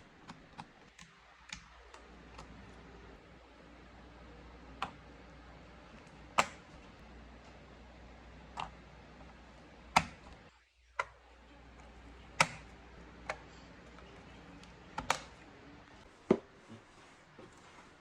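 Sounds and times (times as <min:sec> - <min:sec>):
faint low hum: 0:00.0 - 0:18.0
computer parts clicking and knocking: 0:09.8 - 0:11.2.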